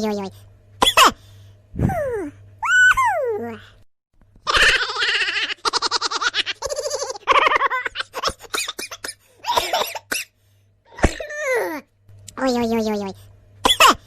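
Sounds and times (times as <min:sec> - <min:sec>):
cartoon voice cackling: 0:04.4 - 0:08.4.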